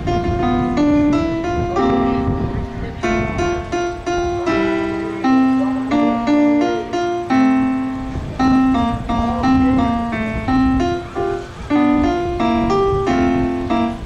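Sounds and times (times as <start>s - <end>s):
solo piano melody: 0.0s - 14.0s
wind rumble on microphone: 0.0s - 14.0s.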